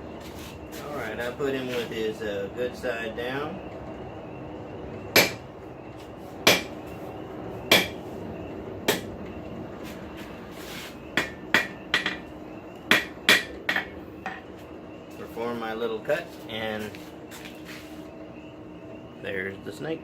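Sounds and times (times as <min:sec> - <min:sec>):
hammer striking steel on anvil: 0:05.2 - 0:05.4, 0:06.4 - 0:06.7, 0:07.7 - 0:08.0, 0:08.9 - 0:09.1, 0:11.2 - 0:12.2, 0:12.9 - 0:14.4.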